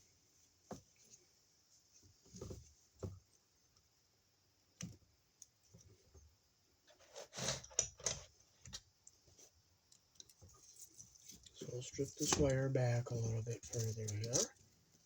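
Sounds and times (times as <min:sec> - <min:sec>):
hand tools clicking and scraping: 0:10.7 - 0:14.6.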